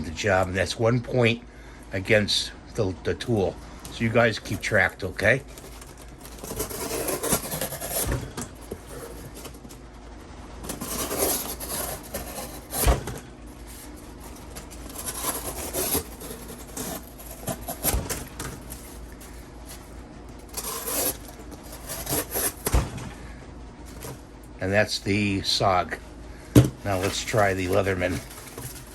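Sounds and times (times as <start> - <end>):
knife cutting cardboard: 4.0 - 9.8, 10.6 - 22.8, 26.8 - 28.9.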